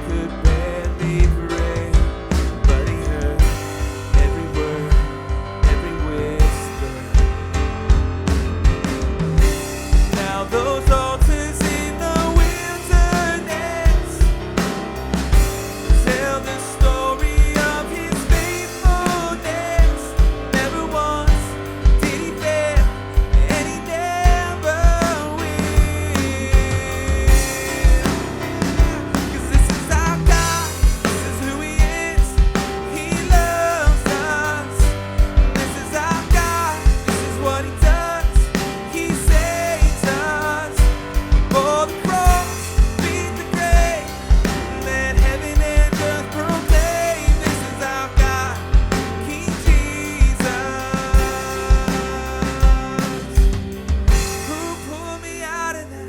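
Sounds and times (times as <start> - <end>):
drum kit beat: 0.0 - 55.2
piano chords: 0.0 - 56.0
kick drum beating: 0.5 - 10.2, 45.2 - 46.0, 48.2 - 49.0.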